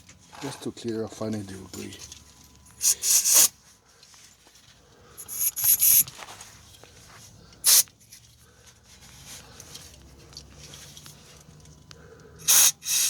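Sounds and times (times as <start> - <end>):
aerosol can spraying: 2.8 - 3.5, 7.7 - 7.9, 12.5 - 13.0.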